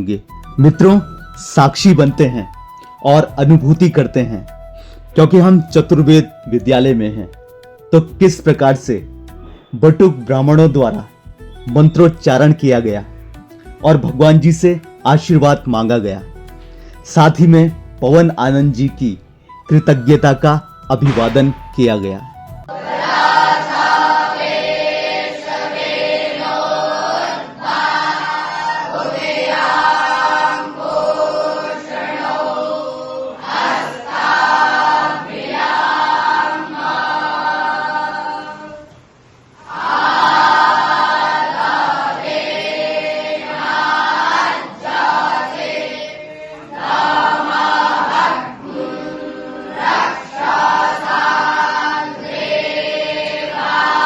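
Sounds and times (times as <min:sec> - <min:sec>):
group chanting in unison: 0:22.7 - 0:38.9, 0:39.6 - 0:54.0.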